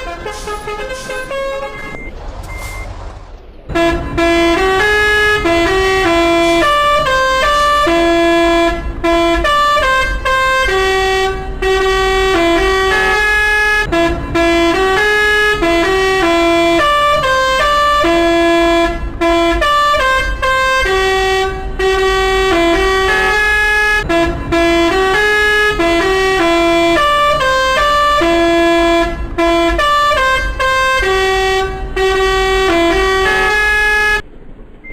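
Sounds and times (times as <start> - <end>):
low rumble: 0.0 - 9.5
musical horn tune: 3.7 - 34.2.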